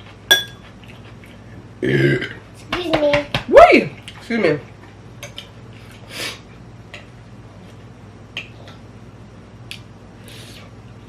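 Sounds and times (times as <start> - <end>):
low steady hum: 0.0 - 2.6.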